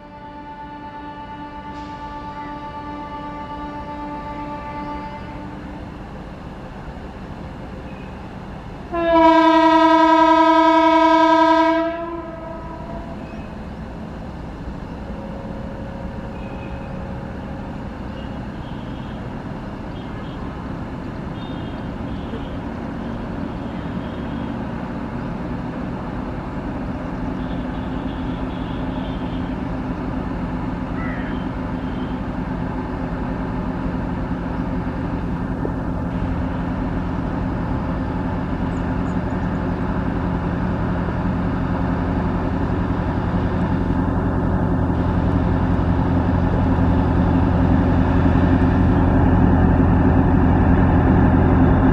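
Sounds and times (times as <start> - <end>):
locomotive horn: 0.0 - 5.8, 8.9 - 13.3, 18.1 - 20.6, 21.3 - 24.9, 27.3 - 29.8, 31.0 - 32.5, 36.0 - 37.8
train rumbling on track: 0.0 - 51.9.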